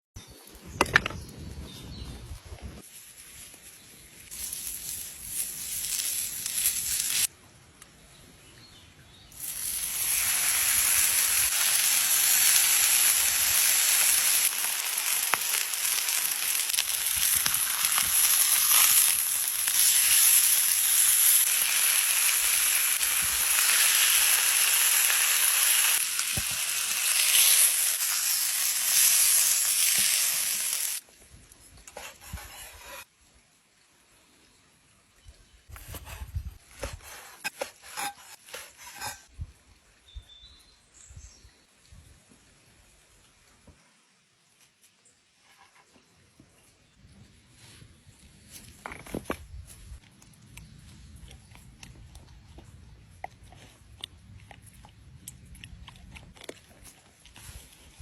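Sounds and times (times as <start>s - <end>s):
food sizzling in a hot pan: 4.3s - 7.3s, 9.4s - 31.0s.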